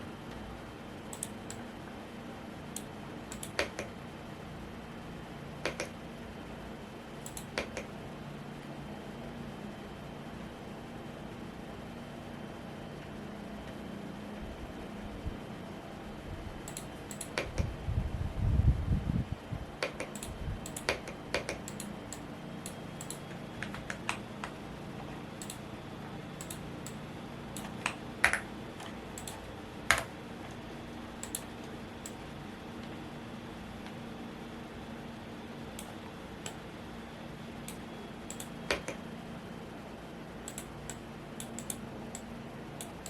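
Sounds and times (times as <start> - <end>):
steady fan hum: 0.0 - 43.0
mechanical keyboard typing: 19.8 - 24.6.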